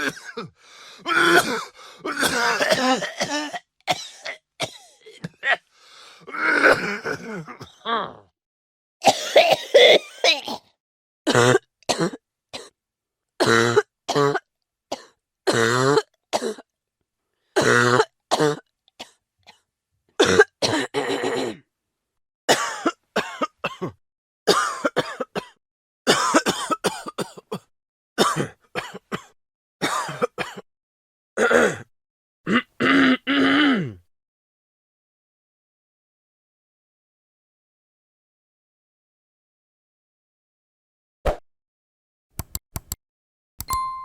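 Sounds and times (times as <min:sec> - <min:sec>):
man coughing: 0:00.0 - 0:05.7, 0:06.3 - 0:07.9, 0:09.0 - 0:10.7, 0:20.2 - 0:21.6, 0:22.5 - 0:30.6, 0:31.4 - 0:31.9, 0:32.5 - 0:34.0.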